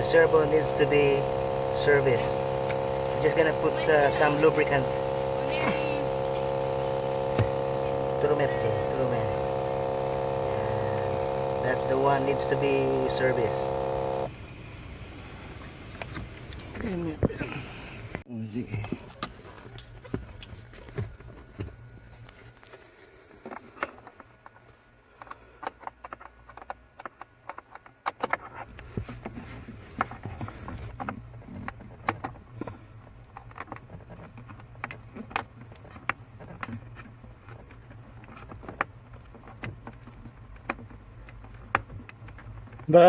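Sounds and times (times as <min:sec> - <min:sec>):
low hum: 0:00.0 - 0:14.6
small parts clicking and tapping: 0:23.4 - 0:29.1.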